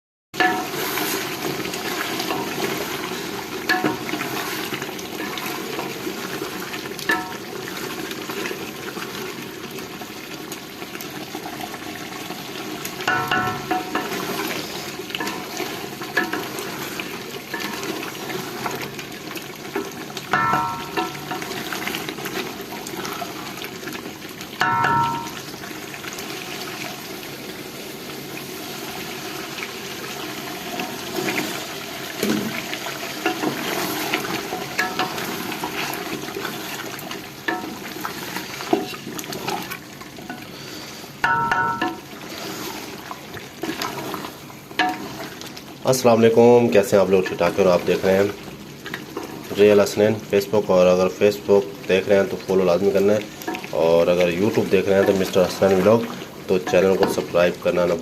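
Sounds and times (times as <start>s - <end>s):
curry sizzling in a pot: 0.4s - 58.0s
metal spoon clinking against pot: 20.3s - 21.5s.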